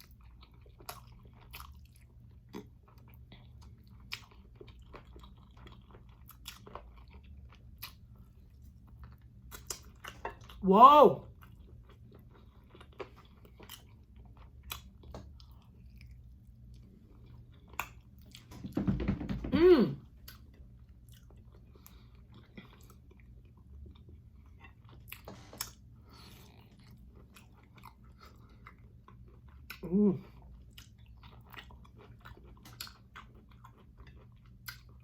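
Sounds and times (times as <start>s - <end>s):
chewing and crunching: 0.0s - 10.6s, 11.2s - 18.6s, 20.0s - 35.0s
person saying ooh: 10.6s - 11.2s, 19.5s - 20.0s, 29.8s - 30.2s.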